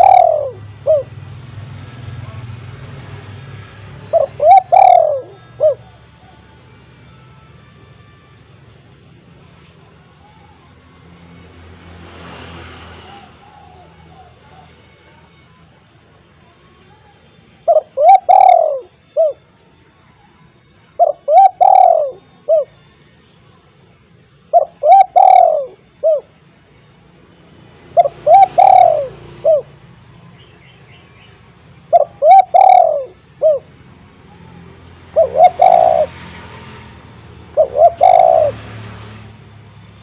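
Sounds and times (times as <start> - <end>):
dove cooing: 0.0 - 1.3, 4.0 - 6.4, 13.0 - 14.9, 17.6 - 19.5, 21.0 - 22.8, 24.5 - 26.4, 27.9 - 29.8, 31.9 - 36.5, 37.5 - 38.8.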